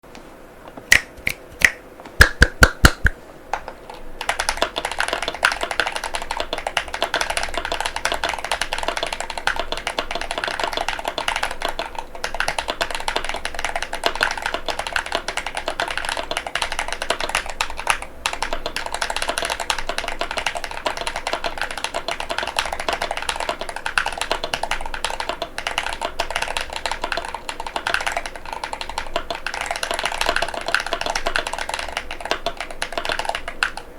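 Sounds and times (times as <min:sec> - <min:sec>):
mechanical keyboard typing: 0:02.2 - 0:33.9.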